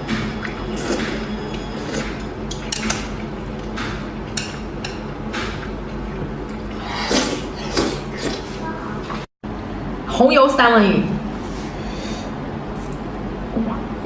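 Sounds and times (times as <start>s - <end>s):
person eating with wet slurps: 0.4s - 3.7s, 6.5s - 8.6s.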